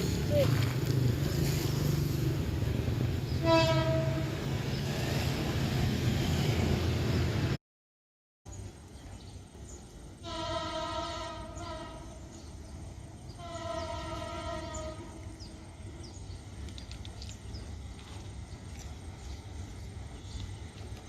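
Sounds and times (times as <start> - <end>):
diesel locomotive horn blasts: 3.3 - 4.6, 10.2 - 12.4, 13.3 - 15.5.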